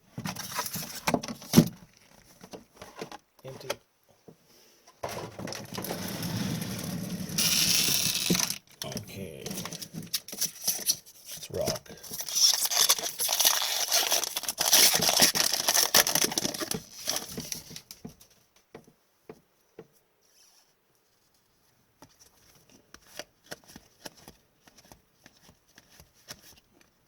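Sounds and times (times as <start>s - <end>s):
wrapper tearing and crinkling: 6.9s - 8.7s, 9.5s - 17.9s
cards clicking and rustling: 7.4s - 17.9s, 22.0s - 26.9s.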